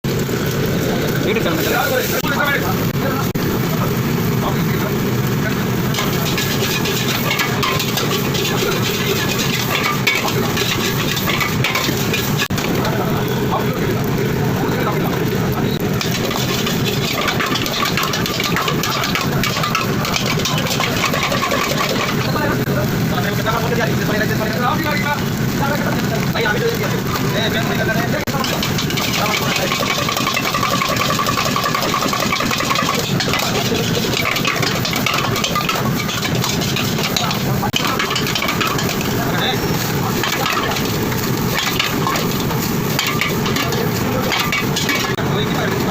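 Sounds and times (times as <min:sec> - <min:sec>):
wok cooking roar: 0:00.0 - 0:45.9
ladle clinking and scraping wok: 0:05.0 - 0:13.1, 0:15.8 - 0:22.7, 0:26.8 - 0:45.9.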